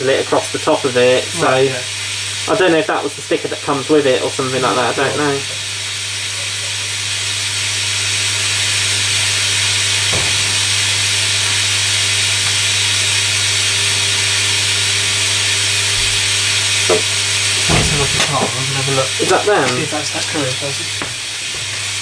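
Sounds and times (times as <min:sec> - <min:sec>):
washing machine running: 0:00.0 - 0:22.0.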